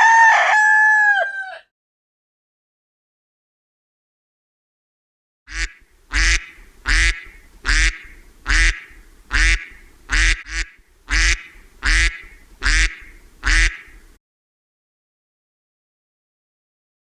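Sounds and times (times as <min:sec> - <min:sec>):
animal calling: 0:05.5 - 0:14.0.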